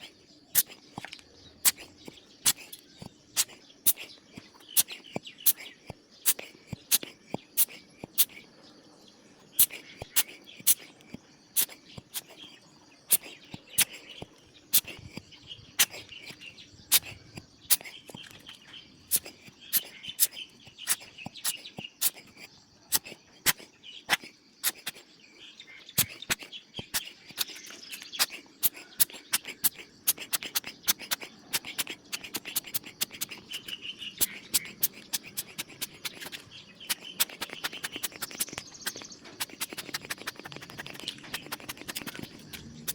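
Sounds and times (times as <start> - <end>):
faint bird chirping: 0.0 - 42.9
sharp clicks: 26.0 - 42.9.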